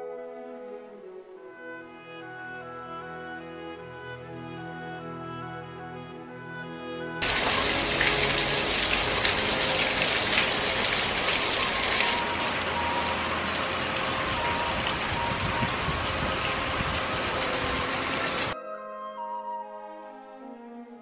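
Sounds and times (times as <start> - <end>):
rain-like rushing hiss: 7.2 - 18.6.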